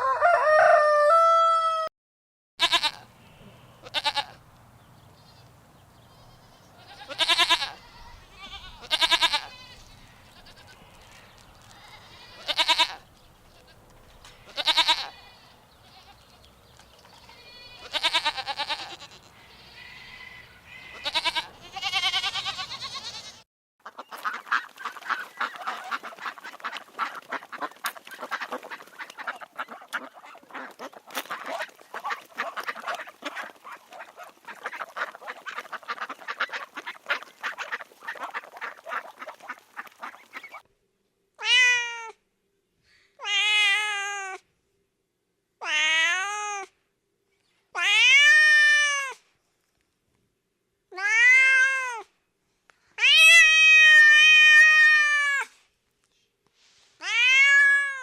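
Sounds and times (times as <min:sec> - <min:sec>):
ducks quacking: 0:17.2 - 0:40.6
cat meowing: 0:51.0 - 0:52.0, 0:53.0 - 0:55.5, 0:57.0 - 0:58.0.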